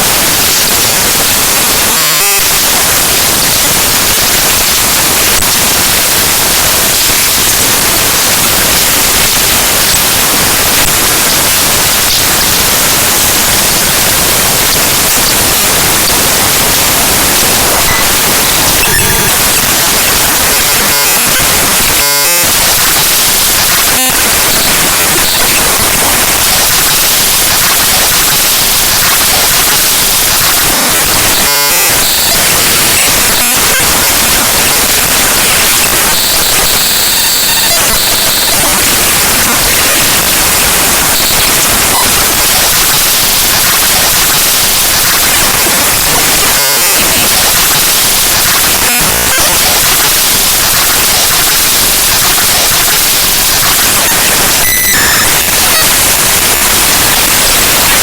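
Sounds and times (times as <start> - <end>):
harsh digital static: 0.0 - 58.0.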